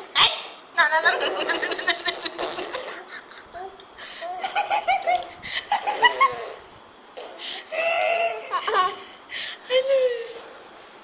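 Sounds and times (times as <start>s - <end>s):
baby laughing: 0.9s - 6.7s, 7.7s - 9.1s.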